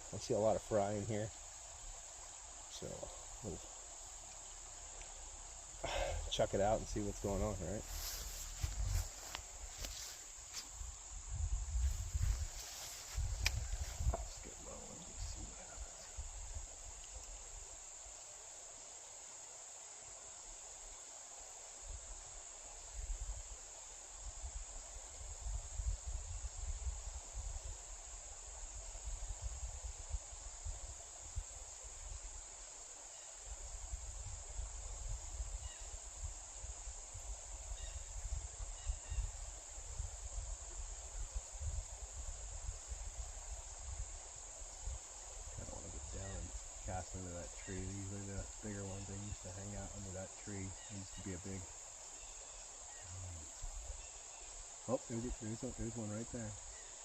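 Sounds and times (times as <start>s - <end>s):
crickets chirping: 0.0s - 57.0s
wind gusts on microphone: 6.1s - 16.9s.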